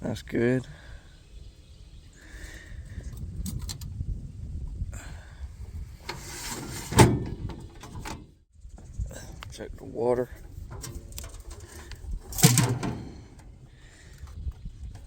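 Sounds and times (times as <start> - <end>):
scrape: 6.1 - 7.0
loud metal clunk: 6.1 - 8.3, 12.3 - 13.6.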